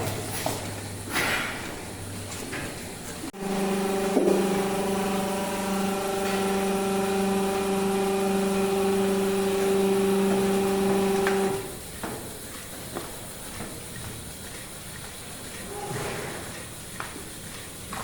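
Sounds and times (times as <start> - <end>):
machine motor humming: 3.3 - 12.4.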